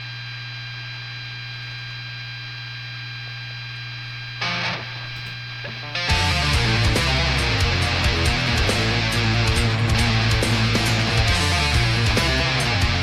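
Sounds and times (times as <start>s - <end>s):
amplifier mains hum and buzz: 0.0s - 13.0s
electric guitar sound: 4.4s - 13.0s.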